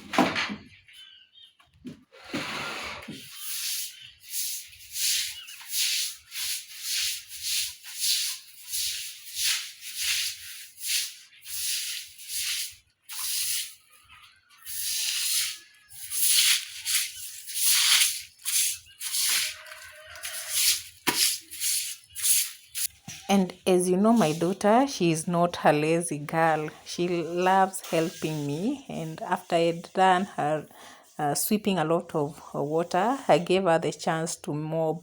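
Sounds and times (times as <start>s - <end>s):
broom sweeping floor: 2.3s - 14.0s, 14.6s - 23.3s, 23.9s - 24.8s, 26.3s - 31.4s.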